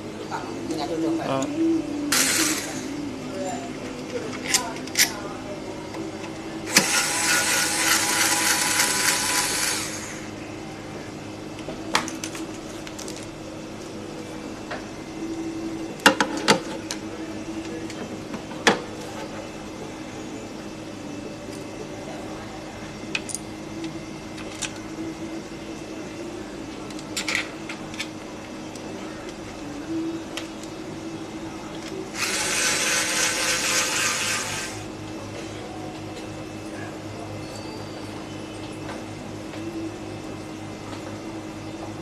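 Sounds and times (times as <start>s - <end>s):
small power tool whirring: 2.1s - 3.0s, 6.7s - 10.3s, 32.1s - 34.9s.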